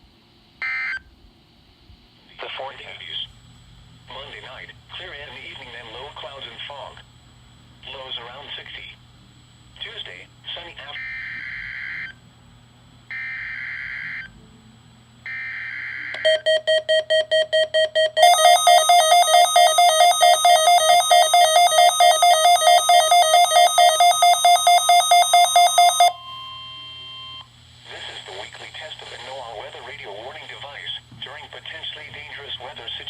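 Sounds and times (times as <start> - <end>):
electronic alarm beeping rapidly: 15.3 - 27.4
data tone bursts: 16.2 - 27.5.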